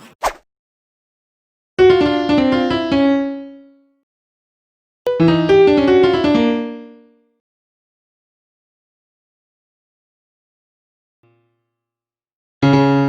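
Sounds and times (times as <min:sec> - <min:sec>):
piano-like keyboard jingle: 0:05.1 - 0:07.1.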